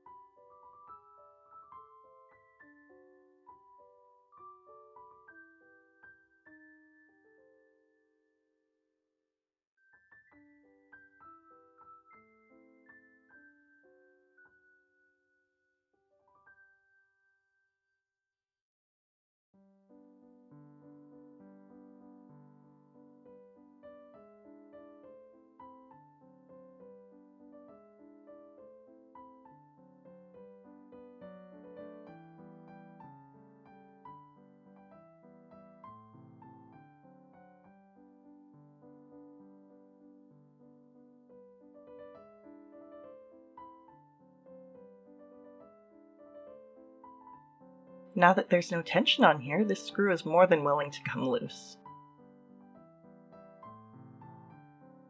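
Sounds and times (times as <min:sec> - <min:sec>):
soft piano music: 0:00.0 - 0:08.5, 0:09.8 - 0:17.7, 0:19.6 - 0:55.0.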